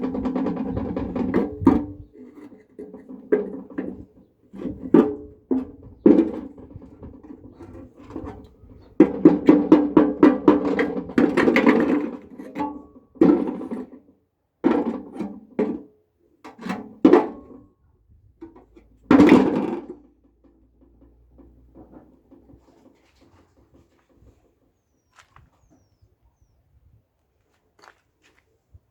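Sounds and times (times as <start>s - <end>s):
washing machine drum rattling: 0.0s - 2.0s.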